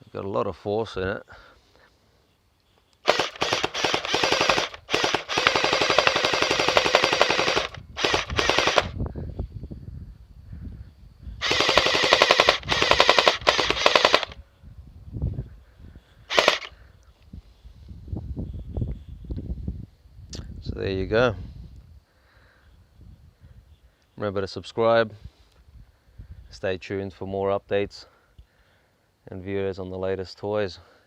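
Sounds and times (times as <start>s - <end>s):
gel ball blaster firing bursts: 3.0s - 9.0s, 11.4s - 14.4s, 16.3s - 16.7s.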